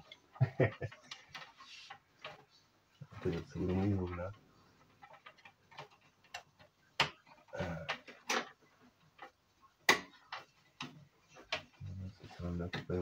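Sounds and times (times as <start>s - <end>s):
plastic and metal parts clicking: 3.2s - 11.9s.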